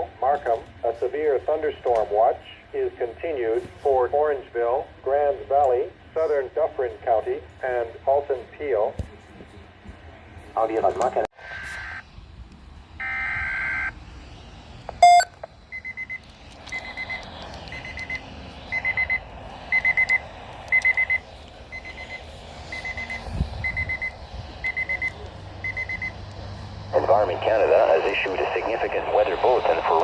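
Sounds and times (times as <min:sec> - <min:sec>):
high electronic alert beeping: 0:15.0 - 0:16.1.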